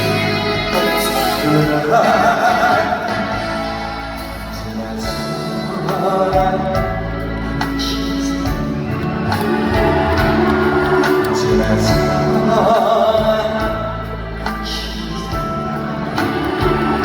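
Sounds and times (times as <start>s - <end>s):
live band instrumental music: 0.0s - 17.0s.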